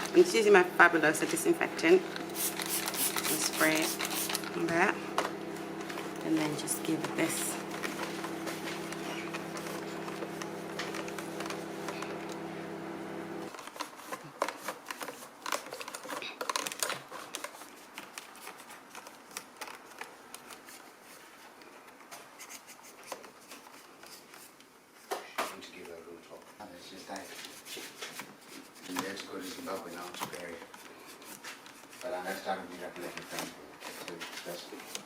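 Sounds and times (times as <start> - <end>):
cloth rubbing plastic parts: 1.3 - 12.5.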